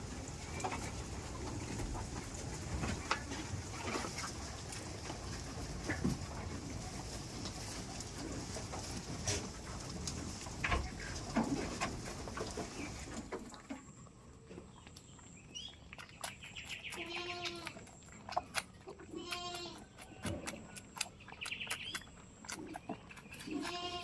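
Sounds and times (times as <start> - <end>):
goats bleating: 17.0 - 17.8, 19.1 - 19.8, 23.5 - 24.0.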